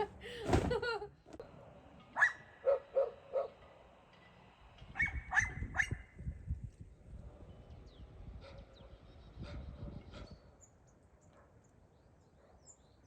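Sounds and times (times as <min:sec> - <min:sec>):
dog barking: 0:02.2 - 0:03.6, 0:12.4 - 0:12.7.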